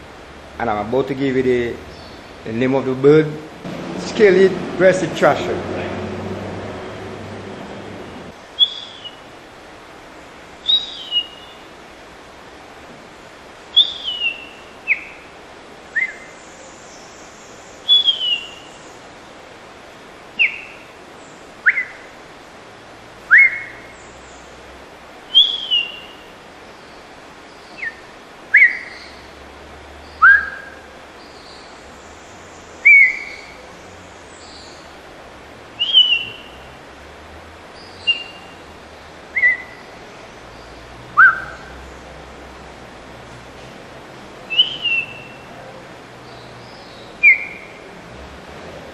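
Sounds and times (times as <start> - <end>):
man whistling bird song: 16.0 - 16.3, 17.9 - 18.6, 23.3 - 23.8, 25.4 - 26.0, 28.6 - 28.8, 30.2 - 30.8, 32.8 - 33.4, 35.8 - 36.5, 39.4 - 39.8, 41.2 - 41.6, 44.5 - 45.4, 47.2 - 47.7.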